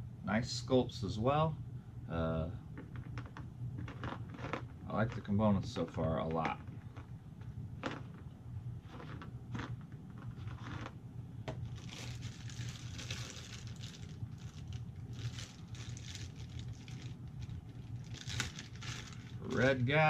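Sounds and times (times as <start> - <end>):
low steady hum: 0.0 - 20.0
plastic packaging crinkling: 2.8 - 7.1, 8.9 - 20.0.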